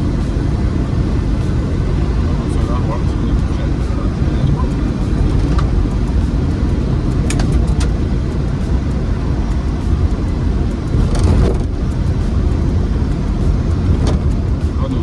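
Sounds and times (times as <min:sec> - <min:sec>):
car engine and road rumble: 0:00.0 - 0:15.0
short clicks or rattles: 0:07.1 - 0:08.0.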